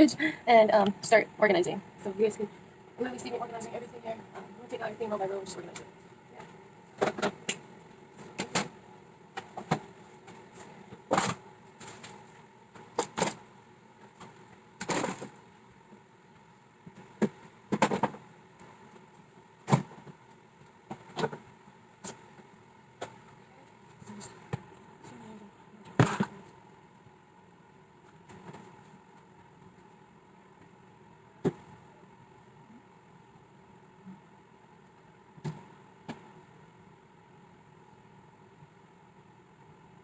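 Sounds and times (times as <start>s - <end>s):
refrigerator hum: 0.0s - 40.0s.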